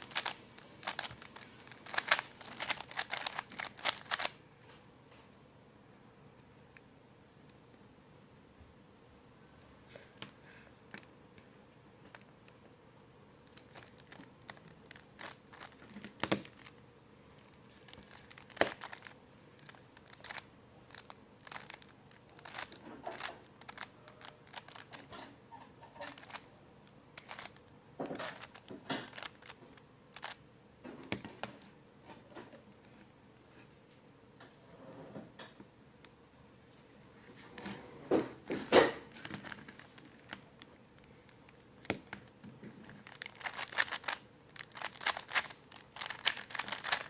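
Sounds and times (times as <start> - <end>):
plastic puzzle cube clicking: 0.0 - 4.4, 17.4 - 25.0, 26.0 - 26.4, 27.2 - 27.6, 28.2 - 29.6, 30.2 - 30.4, 43.0 - 47.0.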